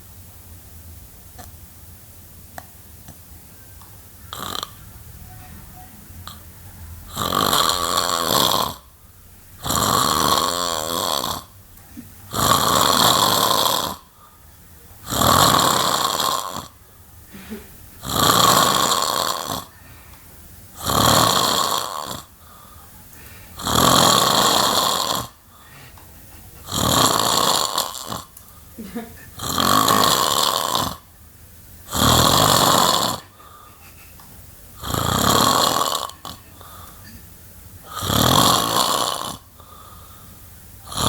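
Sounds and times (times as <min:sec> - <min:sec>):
man snoring loudly: 0:04.3 - 0:04.8, 0:07.1 - 0:08.9, 0:09.6 - 0:11.6, 0:12.3 - 0:14.2, 0:15.0 - 0:16.8, 0:18.0 - 0:19.7, 0:20.8 - 0:22.4, 0:23.6 - 0:25.4, 0:26.6 - 0:28.3, 0:29.3 - 0:31.1, 0:31.8 - 0:33.4, 0:34.8 - 0:36.7, 0:37.8 - 0:39.6
quiet breathing: 0:14.0 - 0:14.8, 0:19.7 - 0:20.4, 0:22.3 - 0:23.6, 0:25.4 - 0:26.6, 0:33.2 - 0:34.2, 0:36.4 - 0:38.0, 0:39.4 - 0:40.6.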